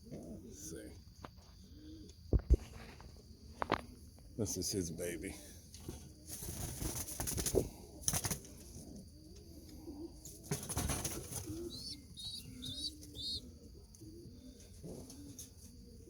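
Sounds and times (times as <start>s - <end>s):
low pigeon cooing: 1.6s - 2.3s, 7.4s - 16.0s
pigeon wings flapping: 6.3s - 8.5s, 10.5s - 11.8s
quick high chirps: 11.6s - 13.4s.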